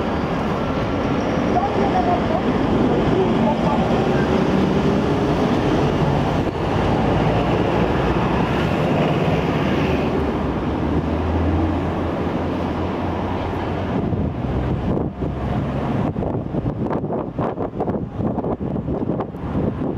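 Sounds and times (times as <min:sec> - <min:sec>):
city traffic rumble: 0:00.0 - 0:19.9
wind on microphone: 0:13.0 - 0:19.9.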